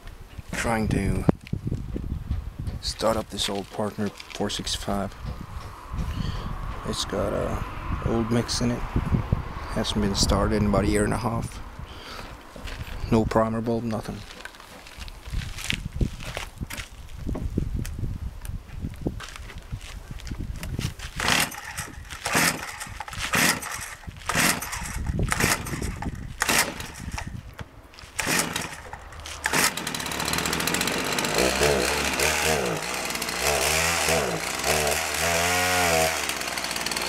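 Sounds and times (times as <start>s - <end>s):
starter cord yanked: 20.6s - 35.2s
chainsaw engine revving: 21.1s - 27.4s, 28.0s - 37.0s.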